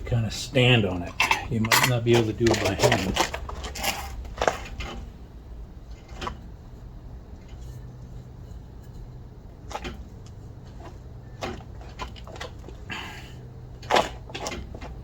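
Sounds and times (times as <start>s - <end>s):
steady low hum: 0.0s - 15.0s
lug wrench clanking on wheel: 0.8s - 5.1s.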